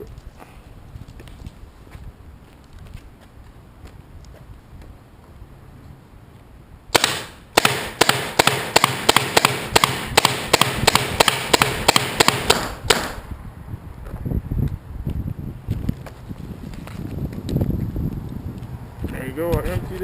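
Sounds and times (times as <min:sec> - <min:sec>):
paintball pistol firing rapidly: 0:07.0 - 0:13.2.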